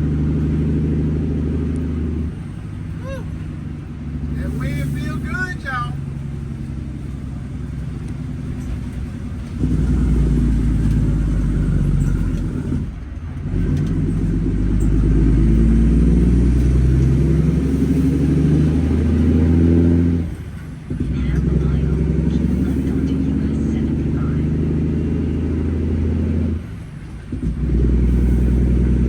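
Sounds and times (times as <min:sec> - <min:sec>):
truck diesel engine under load: 0:00.0 - 0:29.0.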